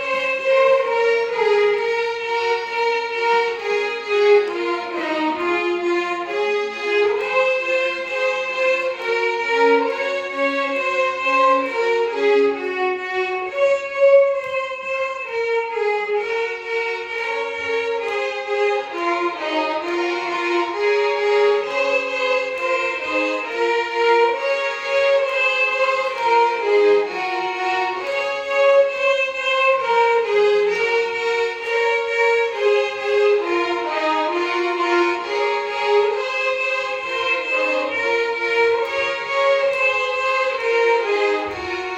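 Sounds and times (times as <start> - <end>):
violin orchestra melody: 0.0 - 41.9.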